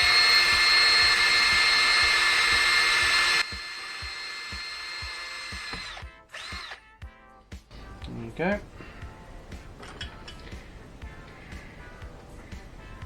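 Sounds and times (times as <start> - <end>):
electric drill drilling: 0.0 - 6.8.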